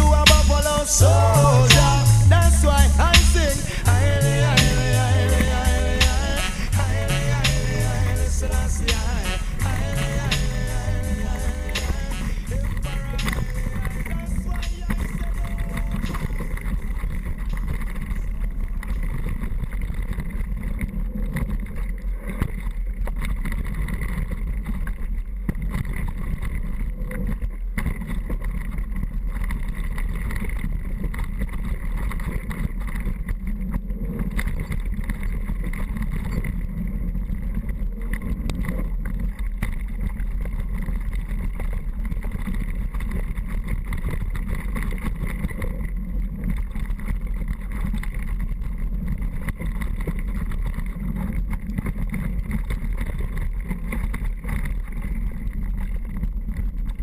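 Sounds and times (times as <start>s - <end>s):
fine rattle and crackle: 13.4s - 57.0s.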